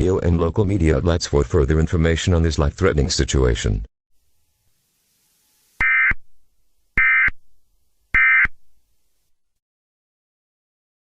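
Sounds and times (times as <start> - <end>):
short electronic alert screeches: 5.2 - 6.3, 7.0 - 7.4, 8.1 - 8.6.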